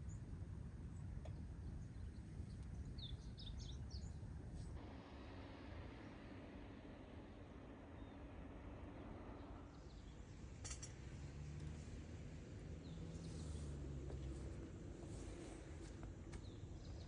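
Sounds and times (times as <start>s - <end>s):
light clink: 10.6s - 11.0s.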